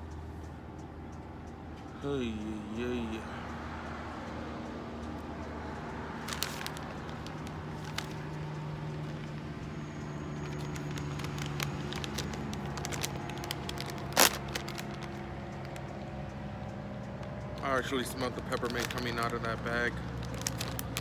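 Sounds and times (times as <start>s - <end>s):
snack bag crinkling: 6.2s - 9.7s, 10.3s - 15.9s, 17.6s - 21.0s.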